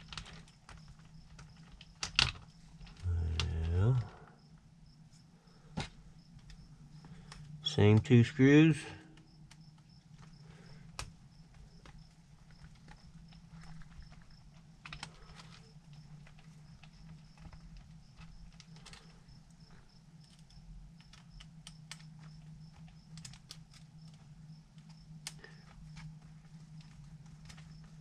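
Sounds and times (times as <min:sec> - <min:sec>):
low hum: 0:03.0 - 0:04.4.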